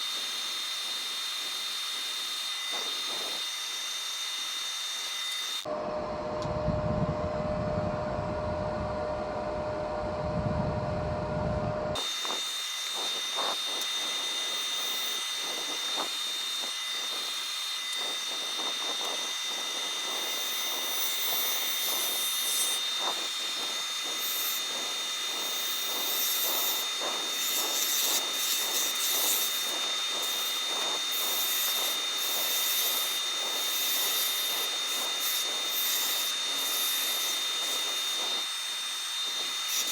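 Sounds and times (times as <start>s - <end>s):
wood lathe whine: 0.0s - 39.9s
low rumble with hum: 5.7s - 12.4s
turning tool scraping wood: 12.0s - 39.9s.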